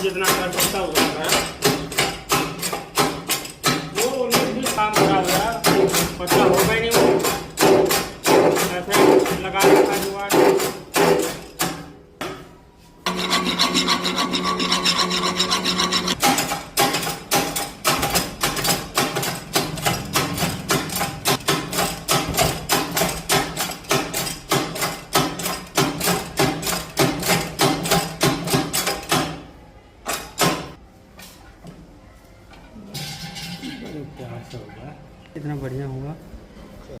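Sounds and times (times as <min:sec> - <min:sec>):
hand rasping on metal: 0:13.1 - 0:16.2.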